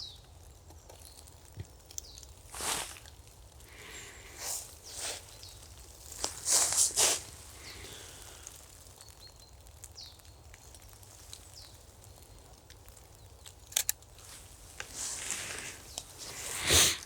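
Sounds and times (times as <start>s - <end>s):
small bird chirping: 0.0s - 3.1s, 3.8s - 16.6s
sharp clicks: 13.4s - 14.1s.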